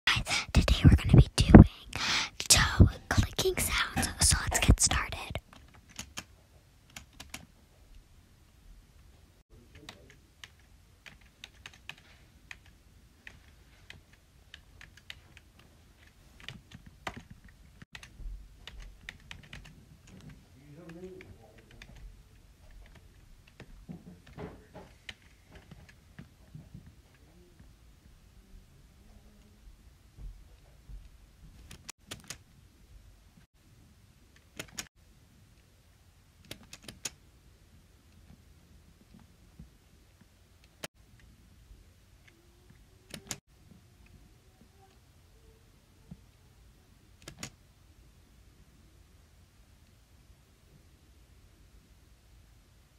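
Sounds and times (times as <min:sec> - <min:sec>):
sharp asmr clicks: 0:36.4 - 0:37.2, 0:43.1 - 0:43.4, 0:47.2 - 0:47.6
sharp close-up clicks: 0:43.1 - 0:43.4, 0:47.2 - 0:47.6.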